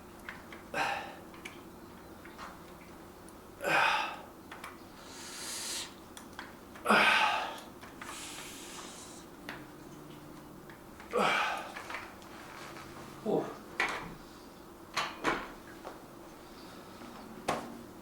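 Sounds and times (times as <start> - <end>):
man exhaling forcefully: 3.6 - 4.2, 5.1 - 6.0
man inhaling softly: 5.0 - 6.0.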